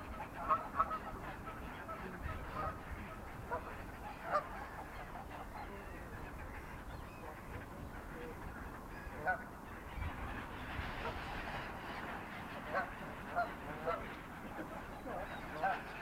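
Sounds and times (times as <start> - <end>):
gulls and ducks squawking: 0.0 - 16.0.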